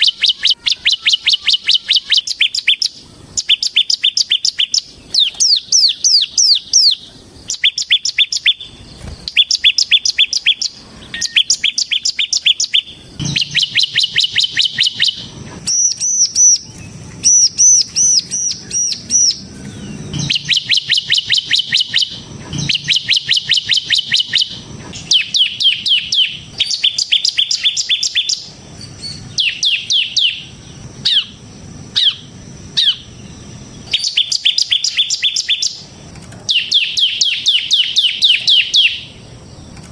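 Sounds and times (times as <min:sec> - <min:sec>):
bird singing rattling chirps: 0:00.0 - 0:39.9.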